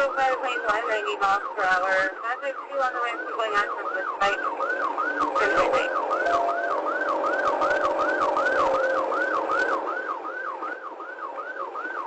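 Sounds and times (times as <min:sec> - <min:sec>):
police siren yelping: 0:00.0 - 0:12.0.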